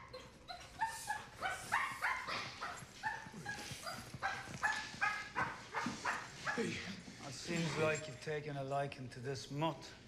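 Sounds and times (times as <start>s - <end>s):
dog yapping: 0.0s - 6.8s.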